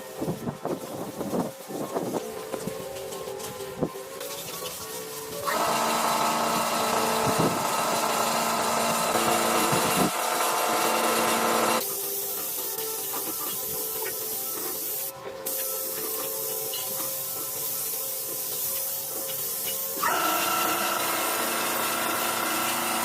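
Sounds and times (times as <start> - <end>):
power tool running: 5.4 - 11.8, 20.0 - 23.0.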